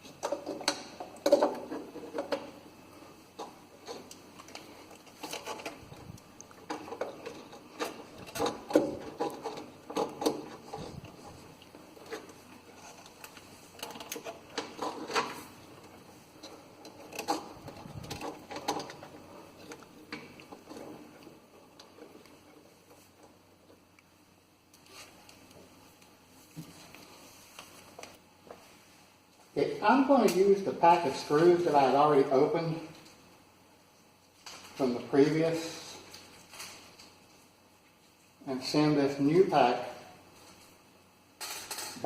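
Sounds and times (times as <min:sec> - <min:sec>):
wires and parts handled: 0:00.0 - 0:02.6, 0:03.3 - 0:24.1.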